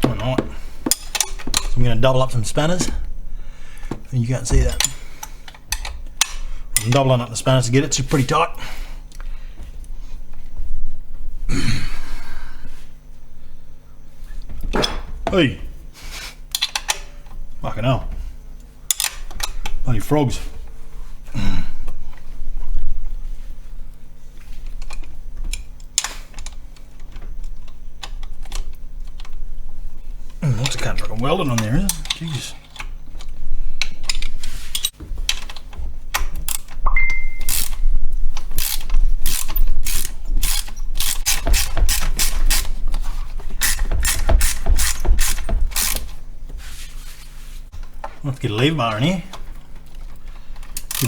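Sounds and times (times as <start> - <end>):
hand ratchet clicking: 0.0 - 1.8, 31.6 - 46.2, 50.6 - 51.0
spanners clicking on metal: 37.4 - 43.0, 43.6 - 46.2, 49.4 - 51.0.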